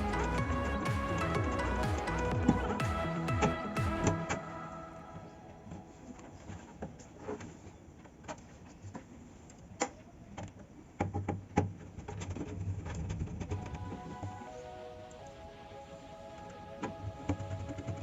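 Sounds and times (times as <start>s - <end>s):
low hum: 0.0s - 6.8s.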